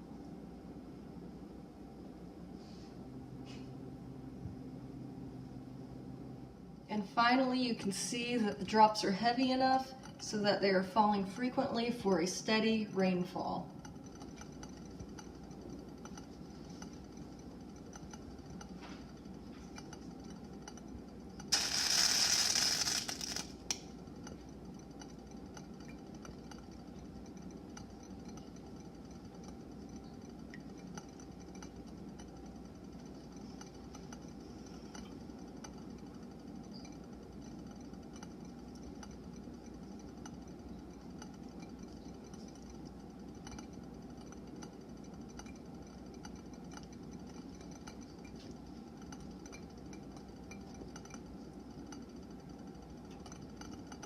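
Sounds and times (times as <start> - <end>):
steady low hum: 0.0 - 54.0
loud hiss: 21.5 - 23.5
water drops ticking: 24.2 - 54.0.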